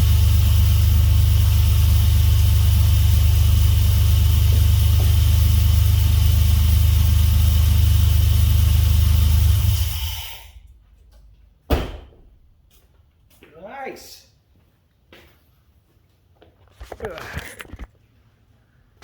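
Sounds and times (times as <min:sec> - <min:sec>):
car engine idling: 0:00.0 - 0:10.6
sharp knock: 0:11.7 - 0:12.3.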